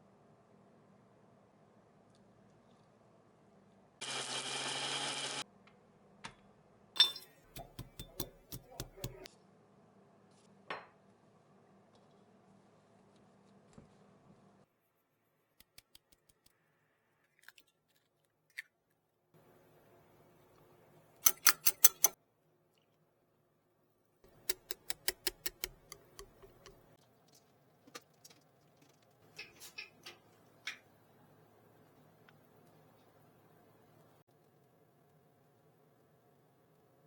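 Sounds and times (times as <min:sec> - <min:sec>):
kitchen utensils clicking and tapping: 0:07.0 - 0:09.3, 0:21.2 - 0:22.2, 0:24.3 - 0:27.0, 0:27.9 - 0:30.9.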